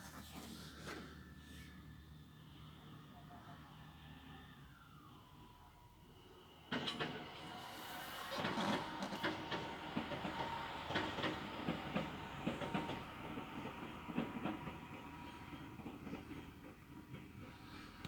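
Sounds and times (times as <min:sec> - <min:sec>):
train rumble: 0:06.6 - 0:18.0
wheels clattering over rail joints: 0:06.7 - 0:17.7.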